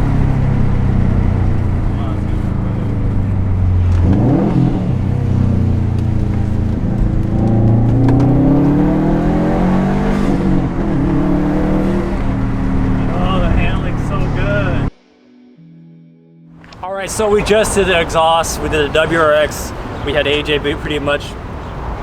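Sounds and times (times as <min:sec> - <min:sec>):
car engine idling and revving: 0:00.0 - 0:14.9.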